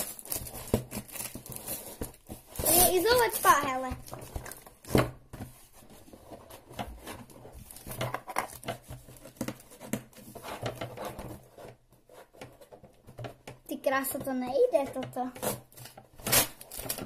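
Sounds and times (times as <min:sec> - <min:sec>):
packaging tape rustling and tearing: 0:00.0 - 0:05.0, 0:06.7 - 0:11.8, 0:15.4 - 0:17.0.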